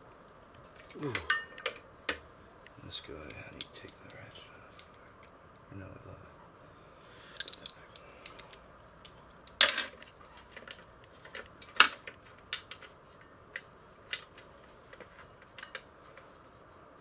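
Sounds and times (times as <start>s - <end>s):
metal hand tools clicking: 7.4s - 9.2s.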